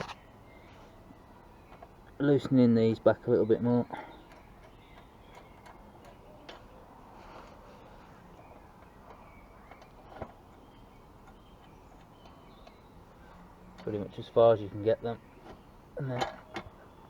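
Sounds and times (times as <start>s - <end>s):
spanner metallic clicks: 4.2s - 6.7s.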